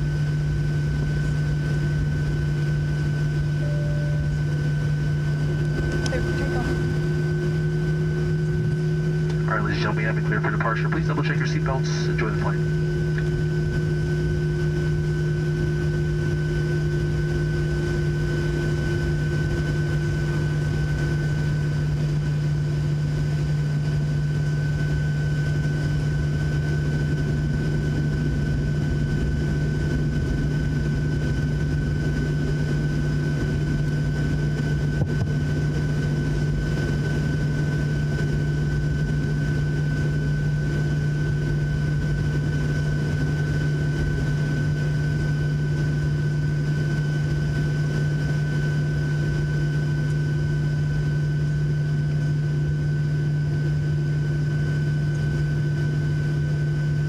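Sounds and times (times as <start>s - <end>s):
jet engine drone in cabin: 0.0s - 57.0s.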